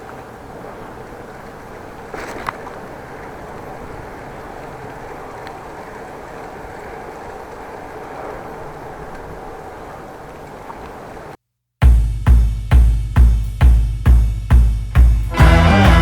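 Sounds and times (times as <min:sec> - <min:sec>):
road and wind noise rumble: 0:00.0 - 0:11.4.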